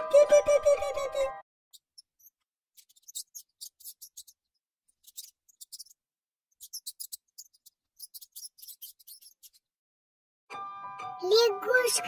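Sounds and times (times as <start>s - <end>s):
mouse squeaking: 1.7s - 9.7s.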